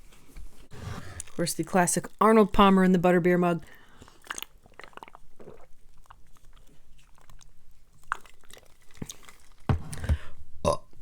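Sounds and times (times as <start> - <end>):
wet chewing: 3.6 - 10.2.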